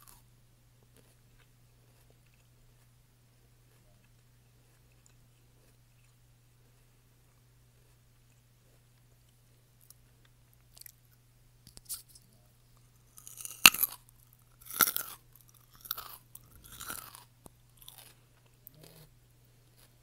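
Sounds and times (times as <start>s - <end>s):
person chewing crunchy food: 0.0s - 0.3s, 0.9s - 3.0s, 3.6s - 11.2s, 13.1s - 20.0s
sharp crunching bite: 13.2s - 14.0s, 14.6s - 19.1s.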